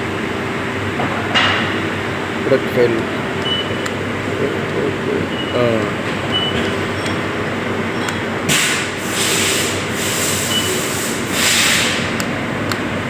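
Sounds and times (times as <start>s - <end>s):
workshop machinery humming: 0.0s - 13.0s
long hissing bursts: 8.5s - 12.2s.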